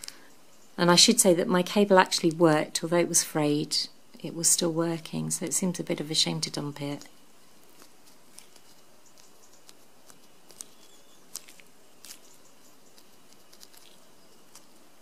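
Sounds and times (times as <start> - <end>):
steady low hiss: 0.0 - 15.0
small ticks: 7.0 - 14.8.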